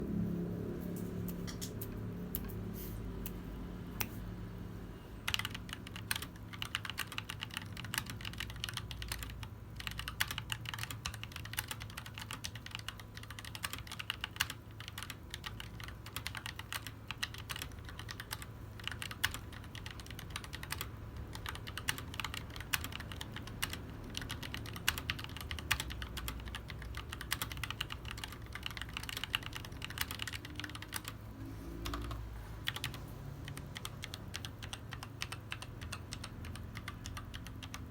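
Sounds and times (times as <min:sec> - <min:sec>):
steady low hum: 0:00.0 - 0:37.9
mechanical keyboard typing: 0:05.2 - 0:31.2, 0:31.8 - 0:37.9.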